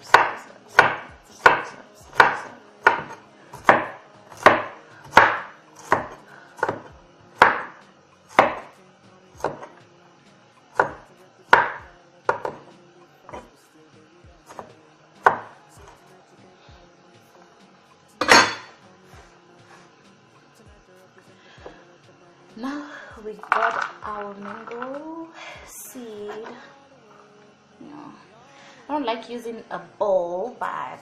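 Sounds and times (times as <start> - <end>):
knife chopping mango: 0.0 - 8.8, 9.4 - 9.7, 10.8 - 12.7, 14.5 - 16.0.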